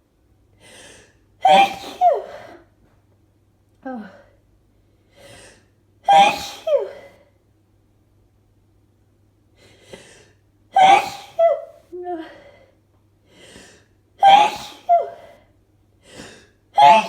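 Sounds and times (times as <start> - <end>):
person sneezing: 1.4 - 2.5, 6.1 - 7.2, 10.8 - 11.8, 14.2 - 15.3, 16.8 - 17.0.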